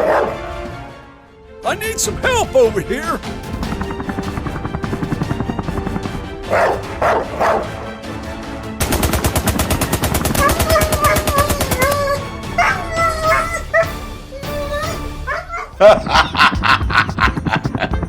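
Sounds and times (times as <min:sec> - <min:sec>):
background music: 0:00.0 - 0:18.0
rapid rattle of sharp clicks: 0:08.8 - 0:12.0.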